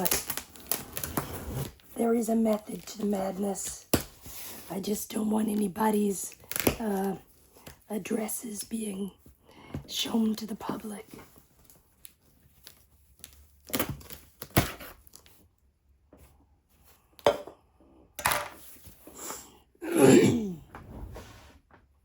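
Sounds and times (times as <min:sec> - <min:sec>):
cardboard tearing and crinkling: 0:00.0 - 0:03.0, 0:12.5 - 0:15.3
woman coughing: 0:19.8 - 0:20.7.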